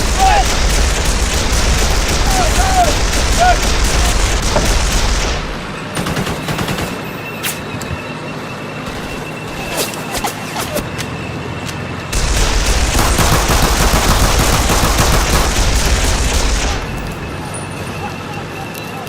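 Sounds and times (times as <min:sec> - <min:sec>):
small-arms gunfire: 0:00.0 - 0:07.1, 0:12.2 - 0:17.2.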